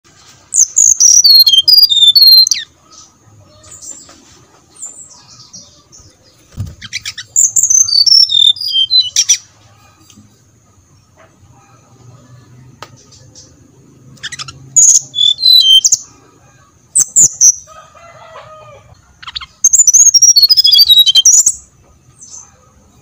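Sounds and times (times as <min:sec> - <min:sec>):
soft bird chirps: 0:00.5 - 0:17.7, 0:19.0 - 0:23.0
bird whistled song: 0:00.6 - 0:02.7, 0:06.8 - 0:09.4, 0:14.2 - 0:16.1, 0:16.9 - 0:17.7, 0:19.2 - 0:21.6.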